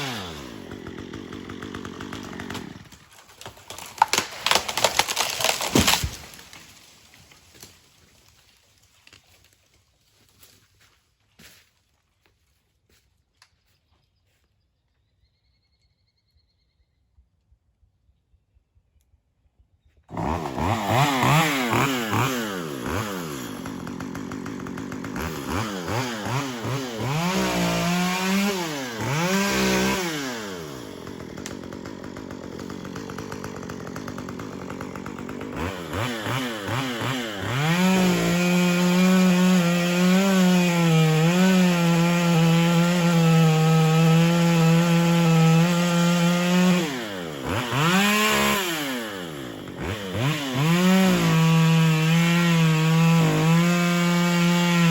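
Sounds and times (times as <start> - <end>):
chainsaw revving and cutting: 0.0 - 7.7, 20.1 - 54.9.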